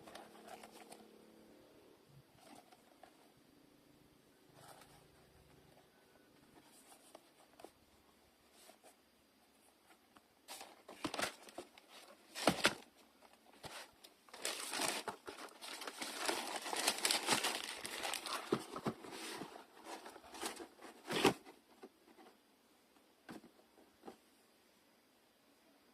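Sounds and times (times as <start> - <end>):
packaging crinkling: 13.5 - 21.4.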